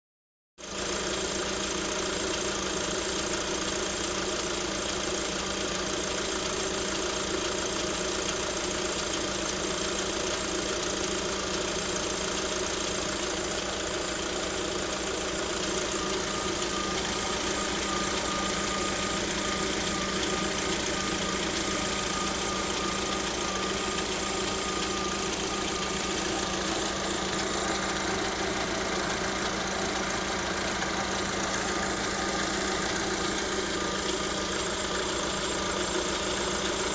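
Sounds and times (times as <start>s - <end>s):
car engine idling: 0.6s - 36.9s
thin steady high tone: 15.2s - 36.9s.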